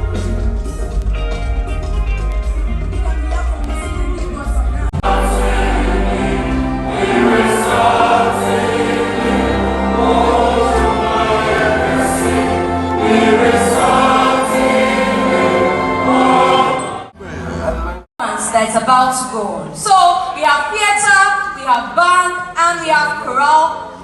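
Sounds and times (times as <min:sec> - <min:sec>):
band with bass: 0:00.0 - 0:18.0
choir singing gospel song: 0:04.9 - 0:17.2.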